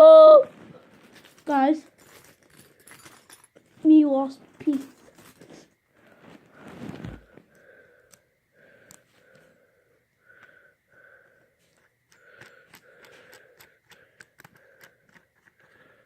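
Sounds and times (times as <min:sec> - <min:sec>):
faint wheezy breathing: 0:05.9 - 0:16.0.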